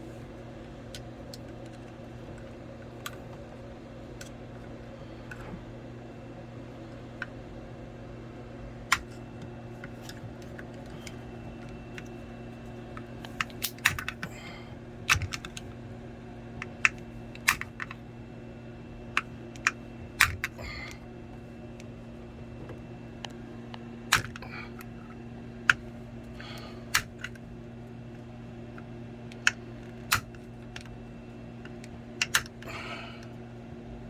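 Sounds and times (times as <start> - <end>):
steady low hum: 0.0 - 34.0
small plastic and metal parts clicking: 13.0 - 14.3, 15.1 - 15.7, 16.6 - 18.0, 24.1 - 24.9, 29.3 - 31.0, 31.6 - 32.7.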